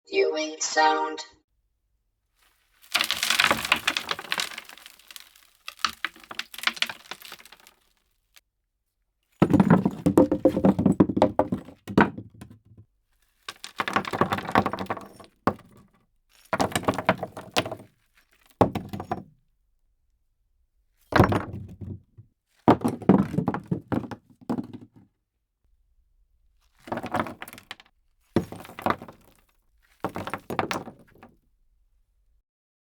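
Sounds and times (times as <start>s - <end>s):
stones and wood debris clattering: 2.4s - 8.0s, 9.4s - 12.5s, 13.4s - 15.8s, 16.4s - 19.2s, 21.1s - 22.1s, 22.7s - 24.9s, 26.8s - 31.3s.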